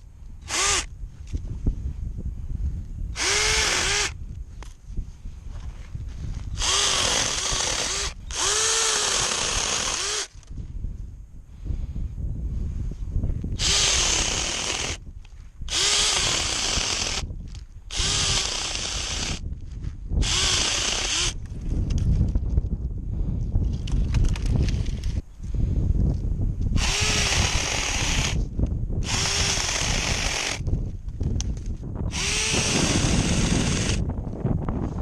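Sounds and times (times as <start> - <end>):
electric chainsaw motor whining: 0.4 - 0.9, 3.2 - 4.2, 6.6 - 10.5, 13.6 - 15.0, 15.7 - 17.3, 17.9 - 19.4, 20.2 - 21.4, 26.8 - 30.7, 32.1 - 34.1.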